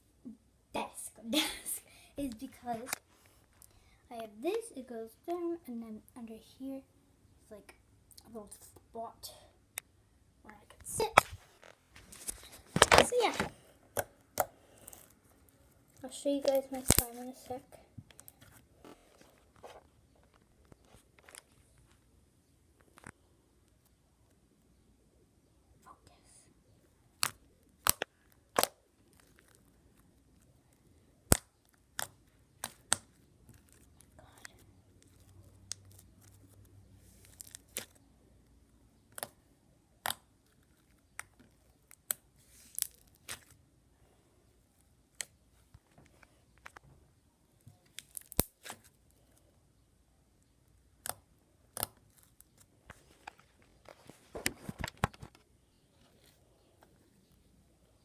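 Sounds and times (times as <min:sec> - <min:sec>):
slime squishing and popping: 0:27.1 - 0:30.0, 0:31.3 - 0:34.1, 0:37.2 - 0:38.0, 0:47.8 - 0:49.0.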